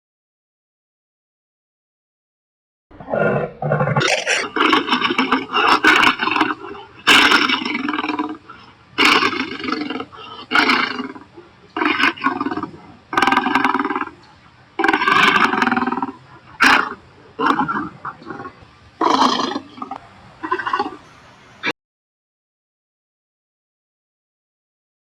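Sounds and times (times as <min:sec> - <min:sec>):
cartoon lion roars and growls: 0:03.0 - 0:06.4.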